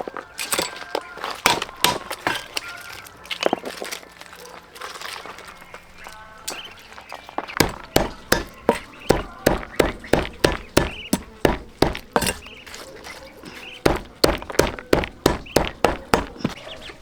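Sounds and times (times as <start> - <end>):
knife chopping on cutting board: 7.6 - 12.7, 13.9 - 16.6.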